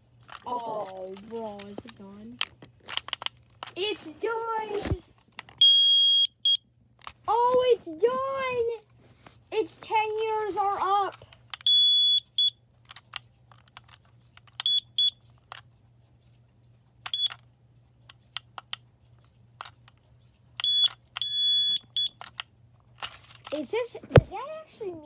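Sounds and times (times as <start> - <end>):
high-pitched alarm beeps: 5.6 - 6.6, 11.7 - 12.6, 14.7 - 15.2, 20.6 - 22.1.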